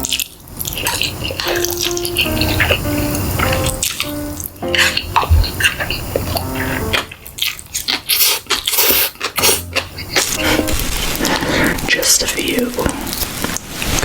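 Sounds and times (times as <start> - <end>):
crunching bites of eating: 0.0 - 2.8, 3.4 - 12.0
short plinking notes: 1.4 - 5.3.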